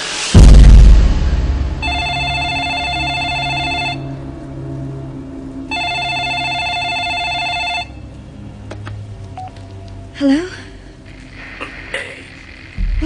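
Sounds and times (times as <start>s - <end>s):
telephone ringing: 1.8s - 4.2s, 5.7s - 8.0s.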